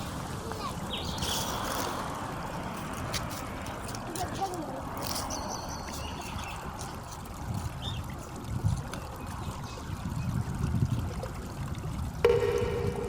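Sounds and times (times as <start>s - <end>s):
stream flowing: 0.0s - 13.0s
steady pitched tone: 12.2s - 13.0s.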